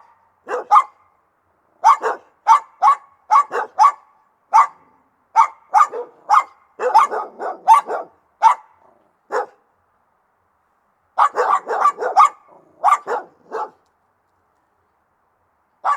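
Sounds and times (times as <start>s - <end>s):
dog barking: 0.5s - 1.0s, 1.8s - 9.6s, 11.2s - 13.8s.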